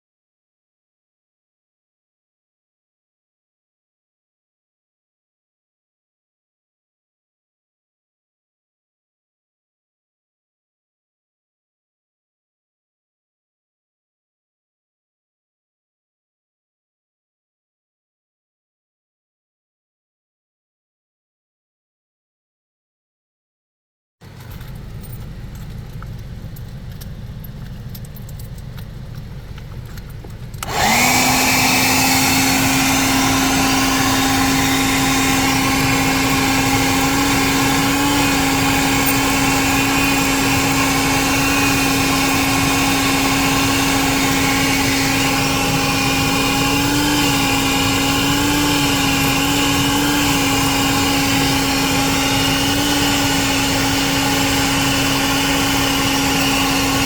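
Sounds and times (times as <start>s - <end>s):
vacuum motor humming: 24.3s - 57.0s.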